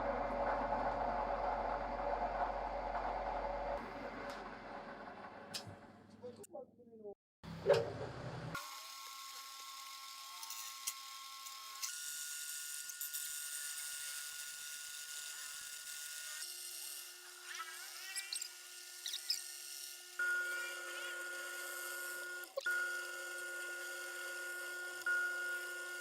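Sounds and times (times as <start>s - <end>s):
small electric motor whining: 8.6s - 26.0s.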